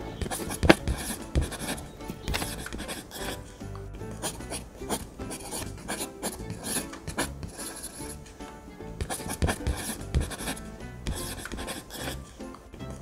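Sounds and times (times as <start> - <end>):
background music: 0.0 - 13.0
paper being rubbed: 0.3 - 1.8, 2.4 - 3.5, 4.2 - 8.2, 9.0 - 12.2.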